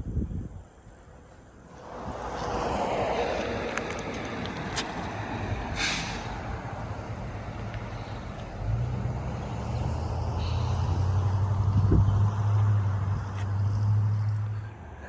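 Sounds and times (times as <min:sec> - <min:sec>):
heavy vehicle engine humming: 0:00.7 - 0:15.0
short hiss: 0:05.8 - 0:06.4.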